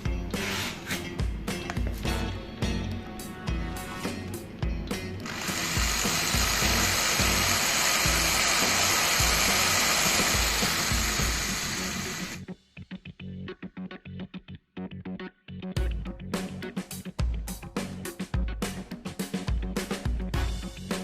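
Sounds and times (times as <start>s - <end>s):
music with steady beat: 0.0s - 14.2s, 15.8s - 21.0s
loud workshop tool running: 5.2s - 12.4s.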